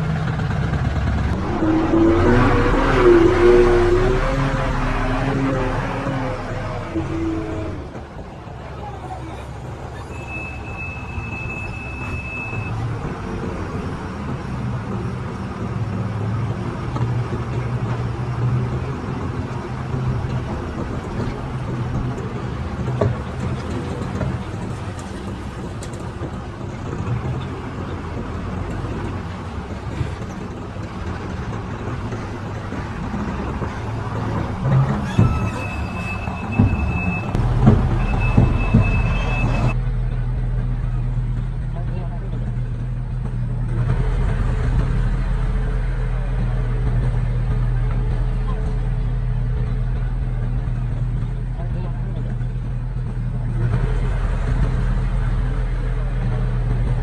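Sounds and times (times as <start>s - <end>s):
diesel engine rumbling under load: 0.0s - 57.0s
knocks: 12.0s - 39.8s.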